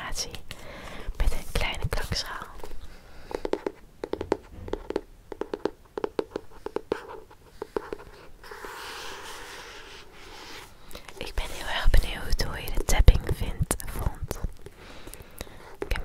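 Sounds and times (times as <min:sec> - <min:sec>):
soft rubbing hiss: 0:00.0 - 0:03.8, 0:06.3 - 0:14.6
light tapping on a book: 0:03.3 - 0:08.1.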